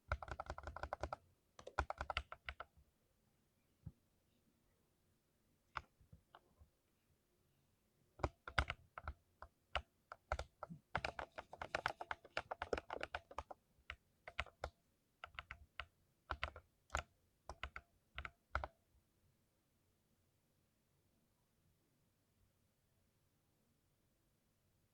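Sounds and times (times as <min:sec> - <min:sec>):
mechanical keyboard typing: 0:00.0 - 0:02.7, 0:08.2 - 0:18.7.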